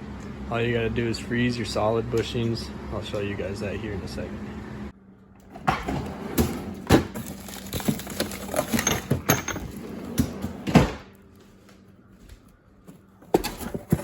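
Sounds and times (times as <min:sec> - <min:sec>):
tools and parts clattering: 0:05.8 - 0:10.9, 0:13.2 - 0:14.0.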